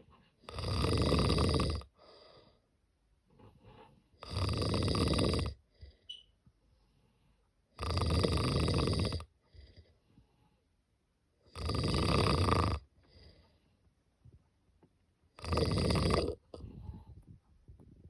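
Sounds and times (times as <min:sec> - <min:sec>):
cat snoring: 0:00.4 - 0:02.6, 0:04.2 - 0:06.0, 0:07.7 - 0:09.9, 0:11.5 - 0:13.4, 0:15.4 - 0:17.2
faint breathing: 0:01.9 - 0:04.2, 0:05.6 - 0:07.7, 0:09.4 - 0:10.9, 0:12.8 - 0:14.1, 0:16.3 - 0:17.7.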